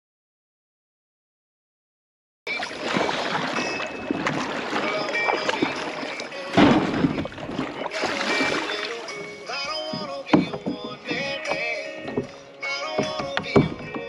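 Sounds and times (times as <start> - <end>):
background music: 2.5 - 14.0
water rushing and splashing: 2.5 - 14.0.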